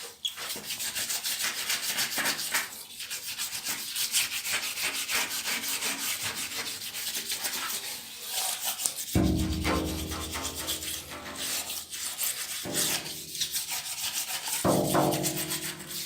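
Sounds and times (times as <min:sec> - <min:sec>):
rough abrasive rubbing strokes: 0:08.3 - 0:16.0.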